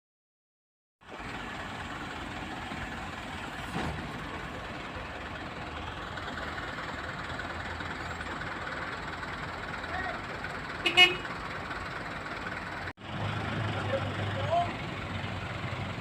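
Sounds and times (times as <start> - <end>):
excavator diesel engine running: 1.0 - 16.0.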